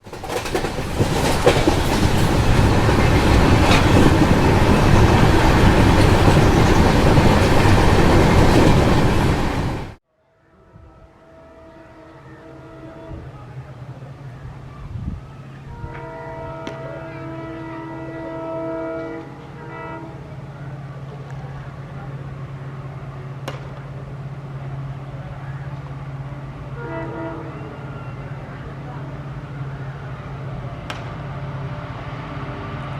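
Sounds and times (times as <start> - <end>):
train wheels clattering: 0.0 - 10.0
locomotive engine droning: 0.0 - 32.9.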